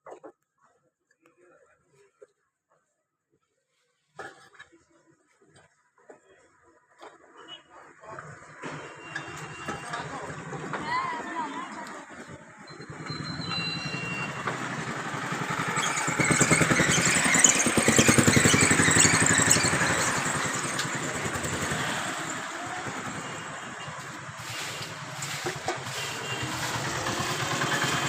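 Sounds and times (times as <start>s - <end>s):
vehicle engine passing by: 12.9s - 28.0s.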